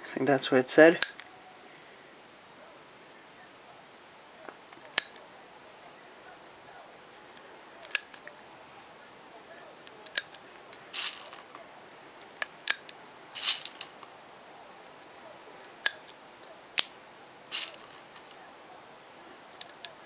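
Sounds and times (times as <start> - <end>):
plastic pistol clicks: 4.8 - 5.2, 10.1 - 10.4
short rattles: 10.2 - 11.5, 13.4 - 14.0, 17.5 - 18.4.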